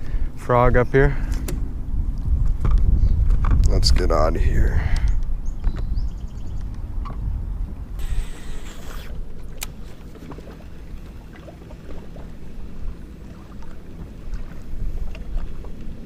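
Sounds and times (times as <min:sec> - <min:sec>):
boat engine low rumble: 0:00.0 - 0:16.0
brief hiss: 0:08.0 - 0:09.2.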